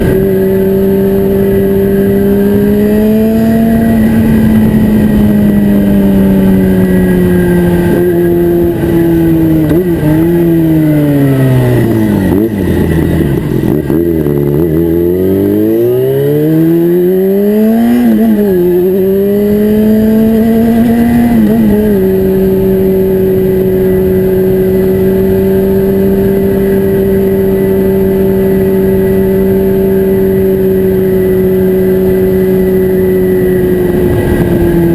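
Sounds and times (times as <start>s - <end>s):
motorcycle engine running: 0.0s - 34.9s.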